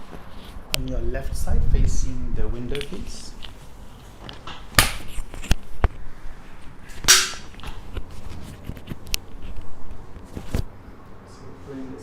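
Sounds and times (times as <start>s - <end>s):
sharp cracks and snaps: 4.2s - 6.0s, 6.9s - 10.7s.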